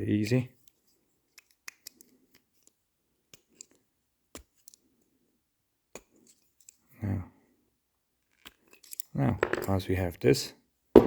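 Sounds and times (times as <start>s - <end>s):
screwdriver clicking and scraping: 0.6s - 4.9s, 5.9s - 6.8s, 8.2s - 9.8s.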